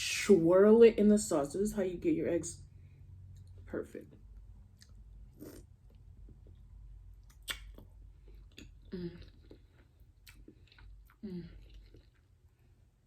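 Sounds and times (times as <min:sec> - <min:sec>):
wet chewing mouth sounds: 0:04.7 - 0:12.3
mouth clicks: 0:07.3 - 0:07.8.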